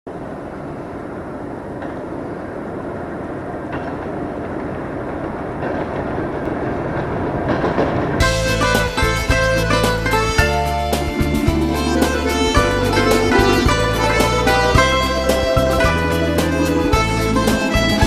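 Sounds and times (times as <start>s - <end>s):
train wheels clattering on rails: 1.6s - 18.0s
instrumental music: 8.2s - 18.0s.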